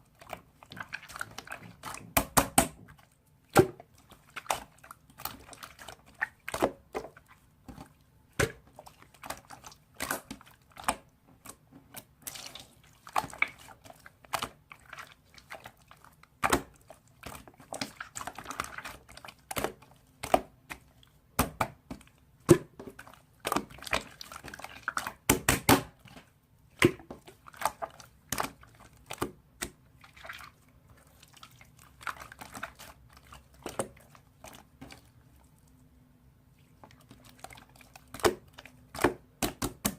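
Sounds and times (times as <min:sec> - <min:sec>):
slime squishing with wet pops: 0:00.0 - 0:39.9.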